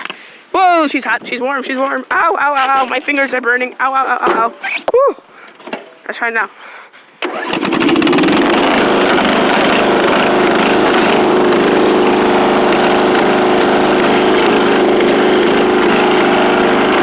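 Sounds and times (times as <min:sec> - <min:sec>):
lawn mower engine running: 0:07.2 - 0:17.0.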